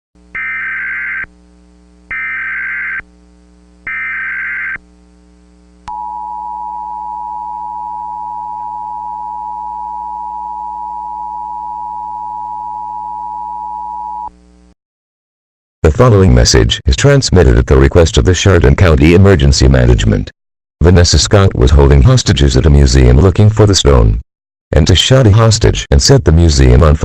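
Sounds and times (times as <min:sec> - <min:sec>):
screechy data tones: 0:00.3 - 0:01.3, 0:02.1 - 0:03.0, 0:03.9 - 0:04.8.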